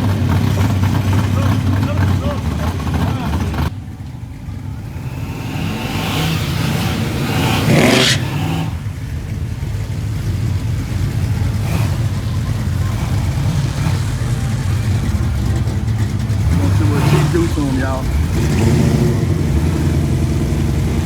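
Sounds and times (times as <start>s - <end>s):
car engines rumbling: 0.0s - 21.0s
engine surge with rushing noise: 0.0s - 21.0s.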